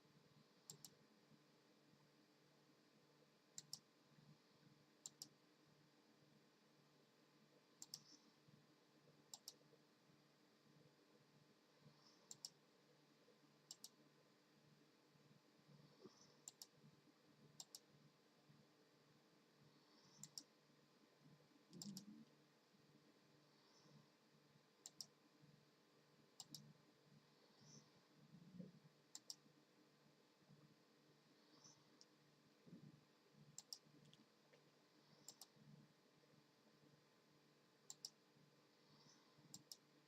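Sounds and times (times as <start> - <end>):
low steady hum: 0.0 - 40.0
faint sharp clicks: 0.6 - 1.0, 3.6 - 3.9, 5.0 - 5.4, 7.8 - 8.2, 9.3 - 9.6, 12.0 - 12.6, 13.7 - 14.0, 16.0 - 16.8, 17.6 - 17.9, 20.0 - 20.6, 21.7 - 22.4, 24.8 - 25.2, 26.4 - 26.7, 29.1 - 29.5, 31.6 - 32.2, 33.6 - 35.6, 37.9 - 38.2, 39.0 - 39.9.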